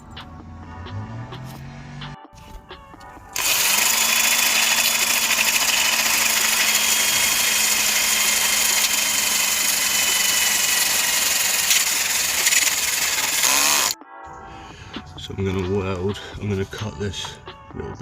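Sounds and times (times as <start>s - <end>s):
angle grinder grinding steel: 3.4s - 14.0s.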